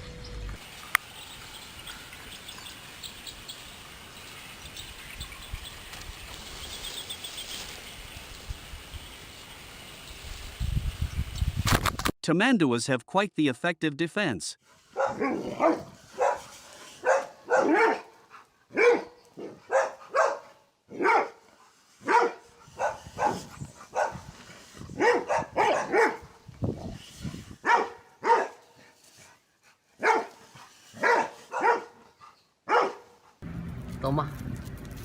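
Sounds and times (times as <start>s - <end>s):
dog barking: 14.9s - 18.1s, 18.7s - 21.4s, 22.0s - 24.3s, 24.9s - 26.3s, 27.6s - 28.6s, 30.0s - 30.4s, 31.0s - 32.1s, 32.7s - 33.2s.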